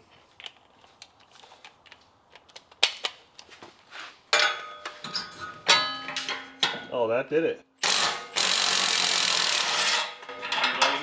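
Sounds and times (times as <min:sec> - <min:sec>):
metallic clank: 0:04.4 - 0:06.9, 0:09.8 - 0:11.0.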